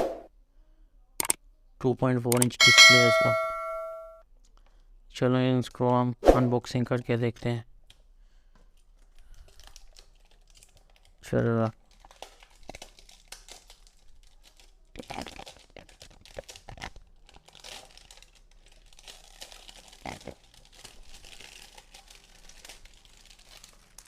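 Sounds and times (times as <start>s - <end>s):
wrapper tearing and crinkling: 9.0s - 24.0s.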